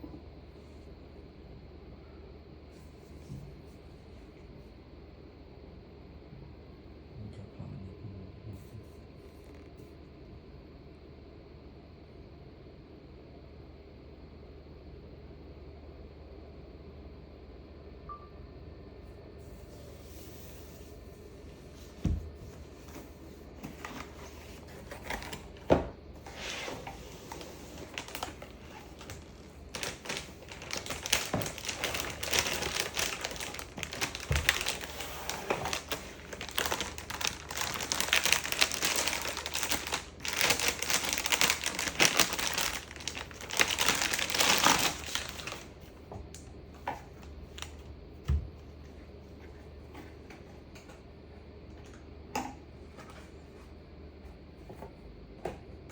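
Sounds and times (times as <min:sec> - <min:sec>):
plastic packaging crinkling: 0:23.5 - 0:45.8.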